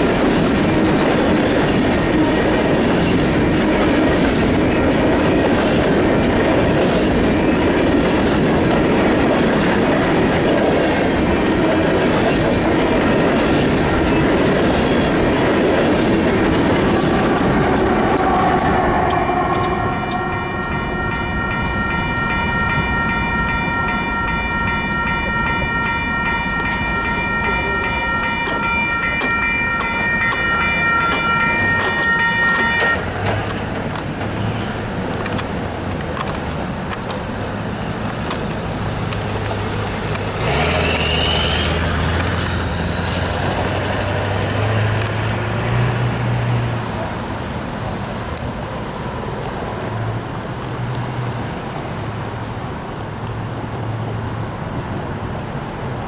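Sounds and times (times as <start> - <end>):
freight train wheels clattering: 0.0 - 52.0
high ringing tone: 16.3 - 33.1.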